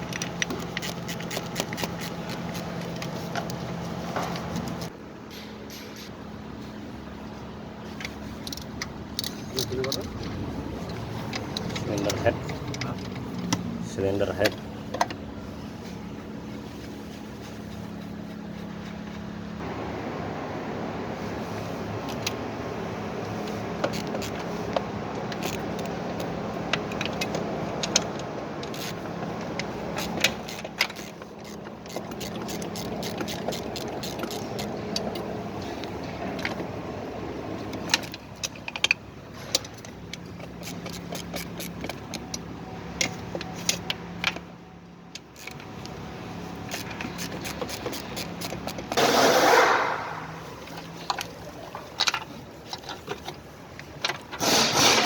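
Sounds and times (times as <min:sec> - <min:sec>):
tools clinking on metal engine parts: 0:07.9 - 0:15.2, 0:23.5 - 0:36.7, 0:37.6 - 0:55.0
loud rushing burst: 0:49.0 - 0:50.4.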